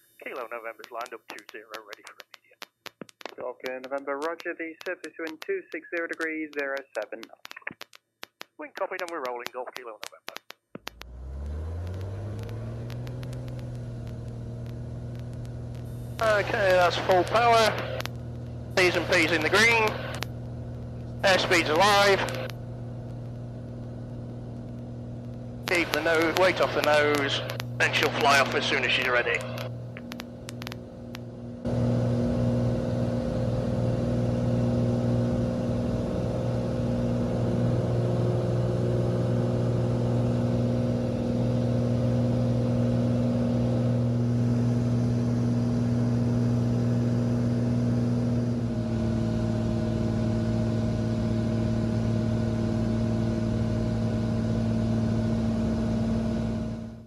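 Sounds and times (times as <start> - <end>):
aircraft piston engine droning: 11.0 - 18.0, 18.6 - 20.5, 21.1 - 22.5, 25.4 - 56.9.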